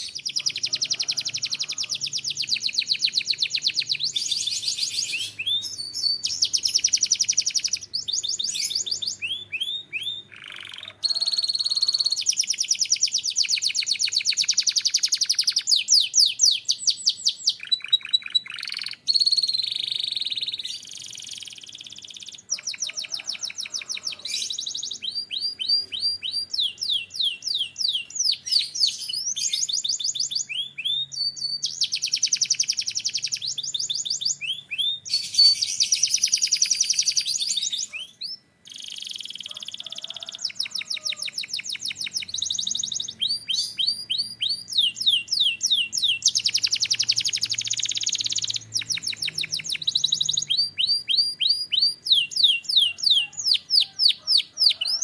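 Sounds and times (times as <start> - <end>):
canary singing trills: 0.0 - 55.0.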